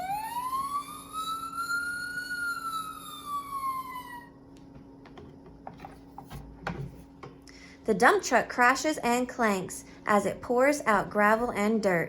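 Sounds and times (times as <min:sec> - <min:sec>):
fire engine siren wail: 0:00.0 - 0:04.4.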